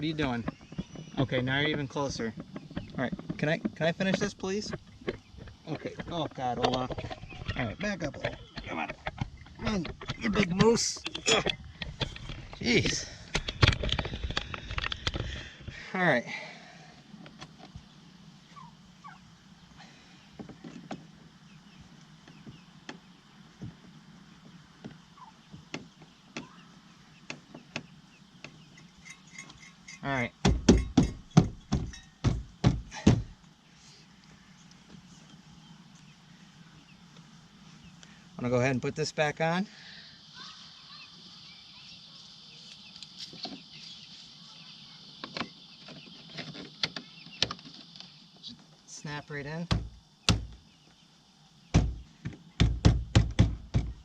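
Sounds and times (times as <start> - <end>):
faint high-pitched background tone: 34.0 - 49.7.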